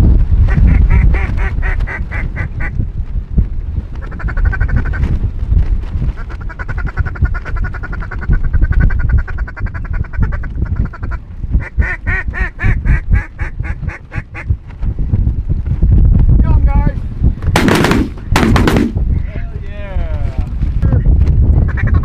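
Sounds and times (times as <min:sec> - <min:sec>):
low rumble: 0:06.8 - 0:22.0.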